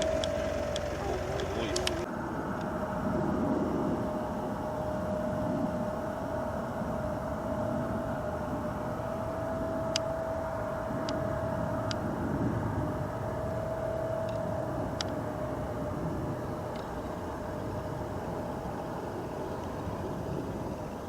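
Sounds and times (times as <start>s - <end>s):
faint clicks: 0.0s - 2.7s
distant engine and traffic rumble: 0.0s - 21.0s
mid-pitched whine: 0.0s - 21.0s.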